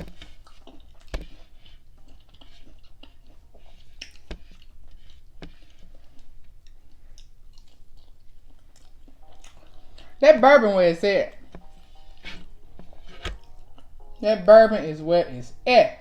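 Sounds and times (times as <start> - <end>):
chewing crunchy food: 0.0 - 10.2.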